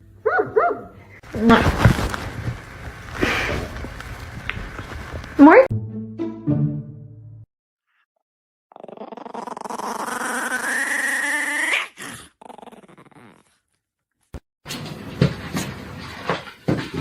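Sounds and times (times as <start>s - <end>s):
dog growling: 8.7s - 13.7s
dog whining: 8.8s - 13.6s.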